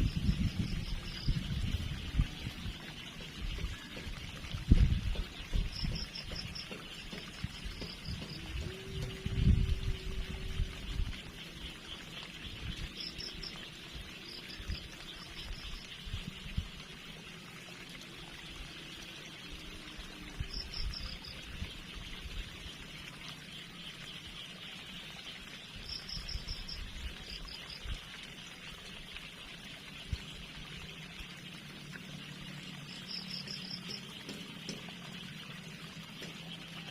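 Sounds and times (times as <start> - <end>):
trickling water: 0.0 - 36.9
insect chorus: 12.9 - 13.6, 32.8 - 34.1.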